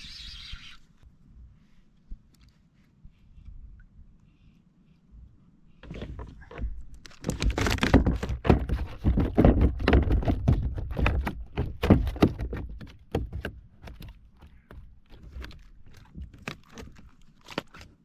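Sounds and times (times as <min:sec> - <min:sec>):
knocks and thuds on a kayak: 0:05.8 - 0:17.8.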